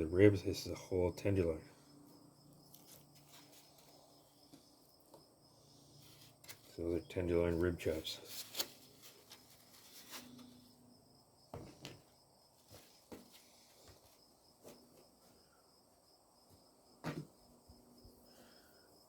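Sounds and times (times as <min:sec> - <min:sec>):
high insect chirring: 0:01.8 - 0:06.5.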